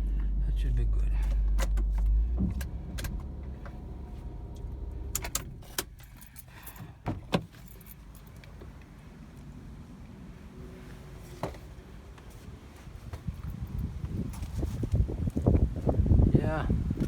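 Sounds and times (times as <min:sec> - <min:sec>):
car engine humming: 0:00.0 - 0:17.0
keys jangling: 0:05.2 - 0:06.9.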